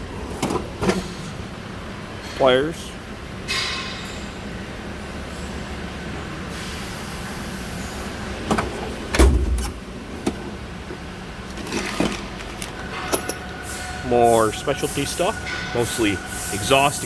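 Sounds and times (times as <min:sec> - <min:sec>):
clicks and knocks of drawers: 0:00.3 - 0:01.2
drawer shutting with heavy thud: 0:08.5 - 0:09.8
metal drawer sliding: 0:08.5 - 0:16.8
steady low hum: 0:09.2 - 0:17.0.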